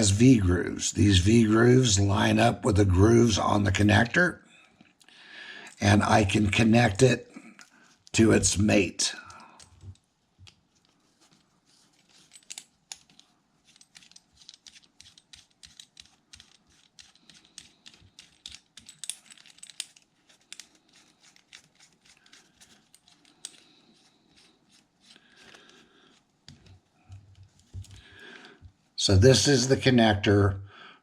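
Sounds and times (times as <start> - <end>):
metallic clicks of connector threading: 12.3 - 20.8.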